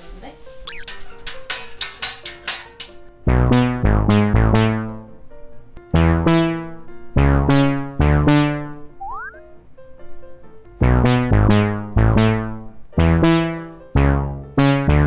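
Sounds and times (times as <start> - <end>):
synth bass low notes: 3.3 - 5.0, 5.9 - 9.1, 10.8 - 15.0.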